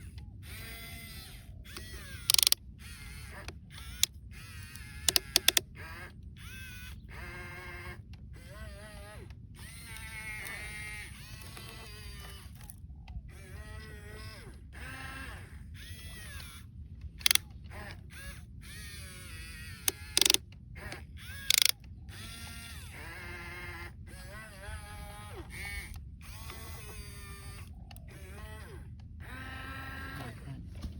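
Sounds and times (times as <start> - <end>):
gears ratcheting clicks: 0.0 - 6.6, 15.8 - 23.0
toy motors whining: 0.0 - 30.6
clicks: 1.7 - 2.6, 5.0 - 5.6, 17.2 - 17.4, 19.9 - 20.4, 21.5 - 21.8.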